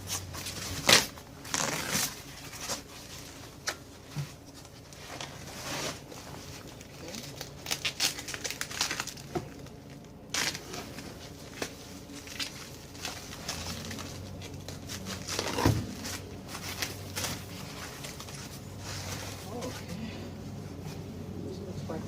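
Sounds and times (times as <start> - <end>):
cardboard and packing crackling: 0.0 - 20.0.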